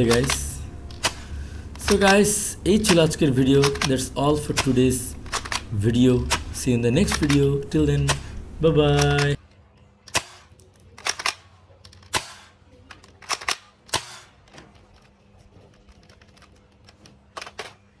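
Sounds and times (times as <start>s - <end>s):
toy rifle firing sharp snaps: 10.0s - 14.5s.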